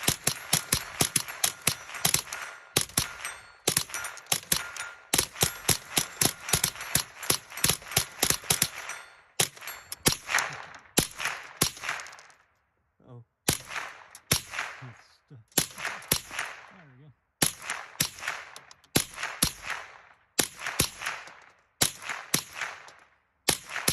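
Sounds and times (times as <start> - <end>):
steel plate clanging: 0.0 - 11.0
rapid rifle shots: 0.0 - 12.5, 13.5 - 23.9.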